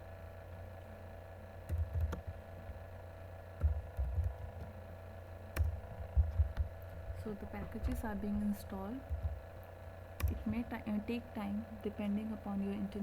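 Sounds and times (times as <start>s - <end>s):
low electrical hum: 0.0s - 13.0s
computer keyboard clicks: 1.7s - 2.4s, 3.6s - 4.7s, 5.5s - 6.7s, 10.2s - 10.6s.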